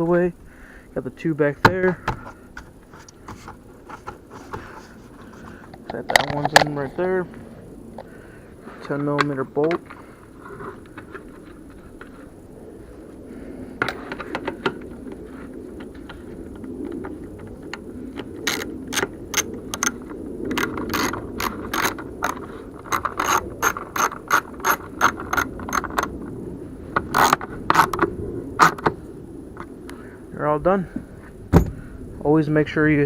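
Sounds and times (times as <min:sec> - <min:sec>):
ratchet wrench clicking: 0:18.5 - 0:26.1.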